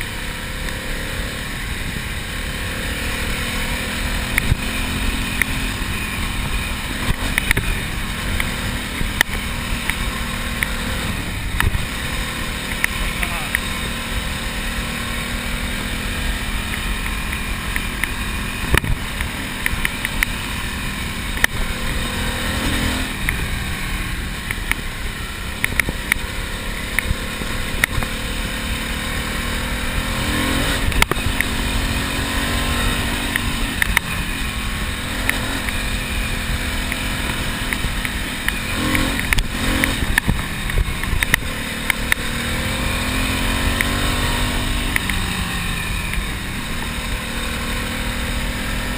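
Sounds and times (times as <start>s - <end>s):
motorcycle engine running: 0.0s - 48.9s
wind rumble on microphone: 4.3s - 12.1s, 18.5s - 23.6s.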